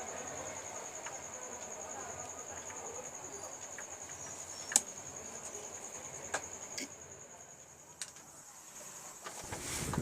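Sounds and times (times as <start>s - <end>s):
cricket trilling: 0.0s - 10.0s.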